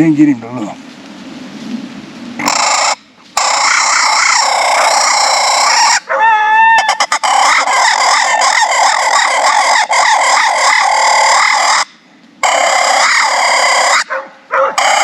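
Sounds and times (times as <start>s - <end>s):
night insects and frogs chorus: 2.4s - 6.0s.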